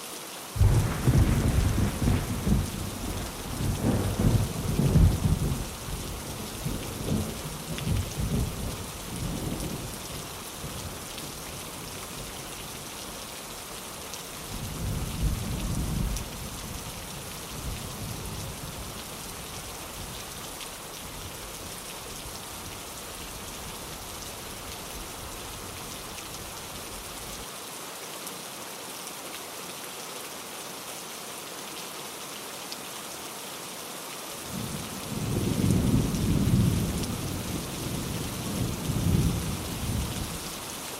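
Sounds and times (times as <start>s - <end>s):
steady rain: 0.0s - 40.9s
thunder rumbling: 0.6s - 9.9s.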